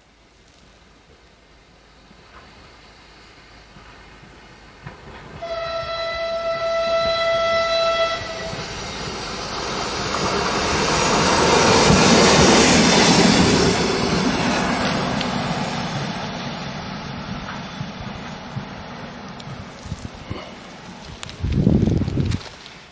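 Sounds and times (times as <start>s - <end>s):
train passing: 0.8s - 22.9s
train horn blast: 5.4s - 8.8s.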